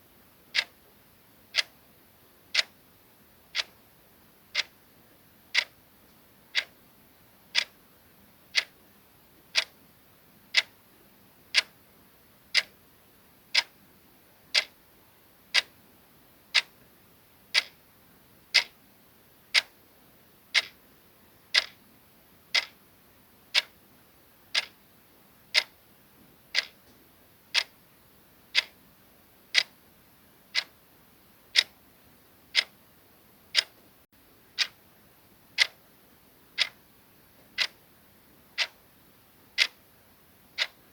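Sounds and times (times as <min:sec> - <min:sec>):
clock ticking: 0:00.5 - 0:00.8, 0:01.5 - 0:01.7, 0:02.5 - 0:02.8, 0:03.5 - 0:03.8, 0:04.5 - 0:04.7, 0:05.5 - 0:05.8, 0:06.5 - 0:06.7, 0:07.5 - 0:07.8, 0:08.5 - 0:08.8, 0:09.5 - 0:09.8, 0:10.5 - 0:10.8, 0:11.5 - 0:11.7, 0:12.5 - 0:12.7, 0:13.5 - 0:13.8, 0:14.5 - 0:14.8, 0:15.5 - 0:15.7, 0:16.5 - 0:16.7, 0:17.5 - 0:17.8, 0:18.5 - 0:18.8, 0:19.5 - 0:19.8, 0:20.5 - 0:20.8, 0:21.5 - 0:21.8, 0:22.5 - 0:22.8, 0:23.5 - 0:23.8, 0:24.5 - 0:24.8, 0:25.5 - 0:25.8, 0:26.5 - 0:26.8, 0:27.5 - 0:27.7, 0:28.5 - 0:28.8, 0:29.5 - 0:29.8, 0:30.5 - 0:30.8, 0:31.5 - 0:31.8, 0:32.5 - 0:32.7, 0:33.5 - 0:33.8, 0:34.6 - 0:34.8, 0:35.6 - 0:35.8, 0:36.6 - 0:36.8, 0:37.6 - 0:37.8, 0:38.6 - 0:38.8, 0:39.6 - 0:39.8, 0:40.6 - 0:40.8.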